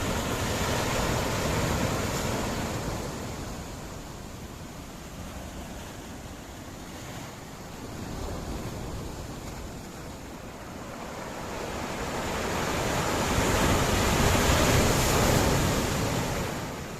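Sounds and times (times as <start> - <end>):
waves crashing onto rocks: 0.0 - 16.9.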